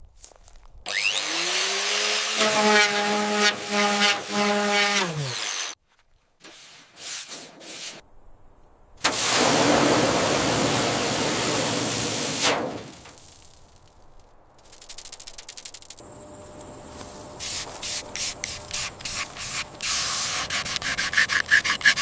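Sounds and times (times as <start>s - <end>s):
power tool winding down: 0.9s - 5.8s
hiss of spray or air: 9.0s - 13.0s, 17.4s - 20.8s.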